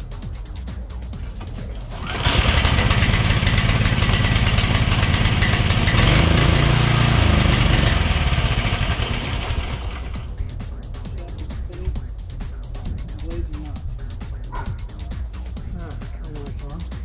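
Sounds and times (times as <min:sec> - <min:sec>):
techno music: 0:00.0 - 0:02.1, 0:08.9 - 0:17.0
small gasoline engine running roughly: 0:01.4 - 0:10.3.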